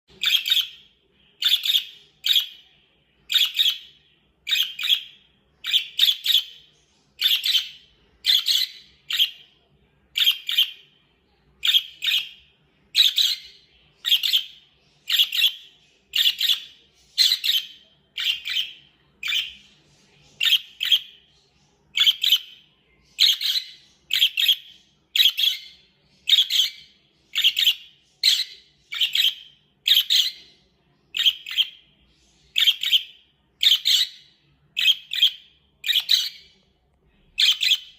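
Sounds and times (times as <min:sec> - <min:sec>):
budgie chirping: 0:00.1 - 0:02.6, 0:03.3 - 0:09.5, 0:11.6 - 0:19.6, 0:23.2 - 0:30.4, 0:34.8 - 0:36.5, 0:37.4 - 0:37.9.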